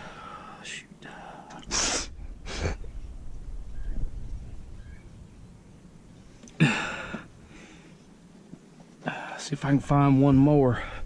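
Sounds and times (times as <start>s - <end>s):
low rumbling handling noise: 1.6s - 9.0s
man exhaling loudly: 6.6s - 7.3s.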